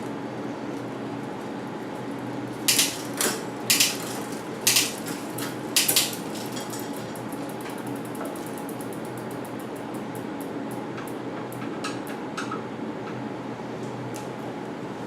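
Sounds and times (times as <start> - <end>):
bike chain running hum: 0.0 - 11.2.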